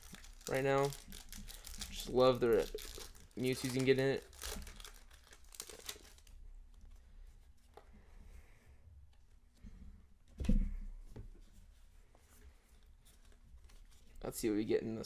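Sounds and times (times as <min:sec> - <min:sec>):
cards and pack rustling: 0:00.0 - 0:06.4.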